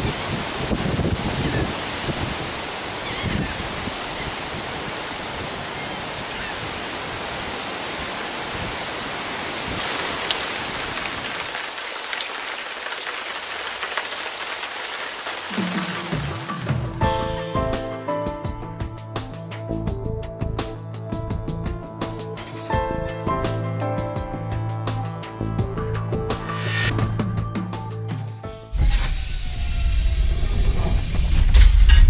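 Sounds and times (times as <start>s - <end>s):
steady rain falling: 0.0s - 17.0s.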